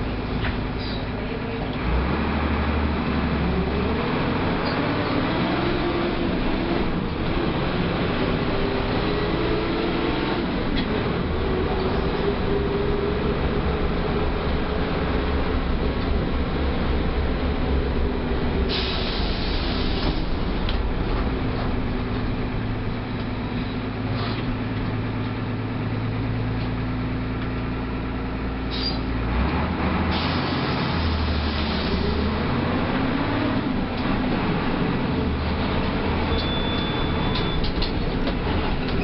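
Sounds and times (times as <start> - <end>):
bus diesel engine running: 0.0 - 39.0
short air hisses: 18.7 - 20.3, 28.7 - 29.1.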